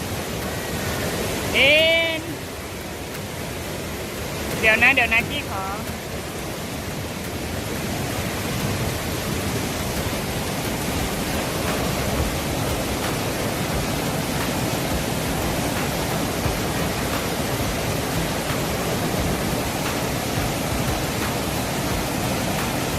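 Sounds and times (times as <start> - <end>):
heavy rain: 0.0 - 22.9.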